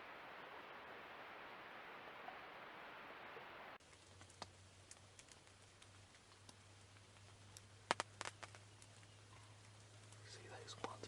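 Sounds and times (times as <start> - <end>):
faint ticks: 3.8 - 11.0.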